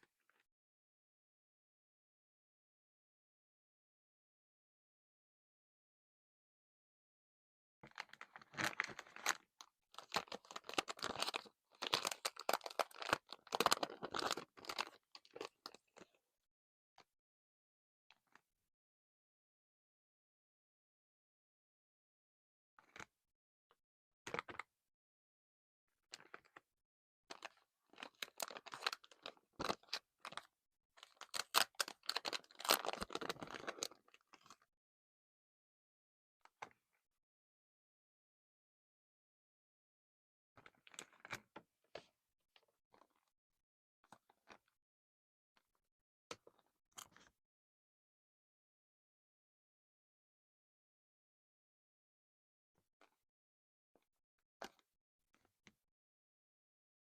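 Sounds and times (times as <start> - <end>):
crinkly packaging being opened: 7.9 - 16.0, 27.3 - 34.6.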